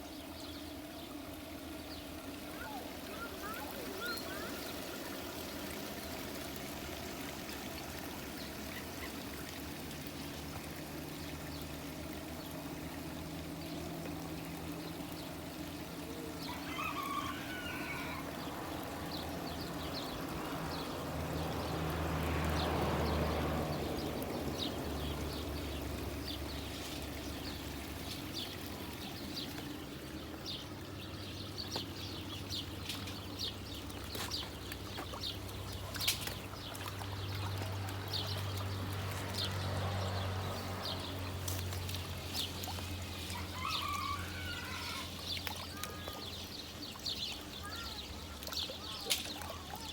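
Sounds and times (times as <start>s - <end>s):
bird calls: 0.0s - 5.2s, 40.5s - 49.9s
fountain water splashing: 0.0s - 49.9s.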